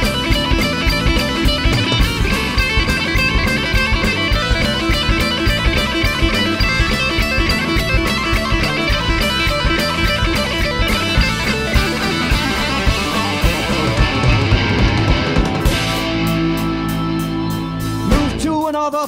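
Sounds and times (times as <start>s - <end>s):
bass guitar: 0.0s - 19.0s
distorted electric guitar: 0.0s - 19.0s
drums with driving beat: 0.0s - 19.0s.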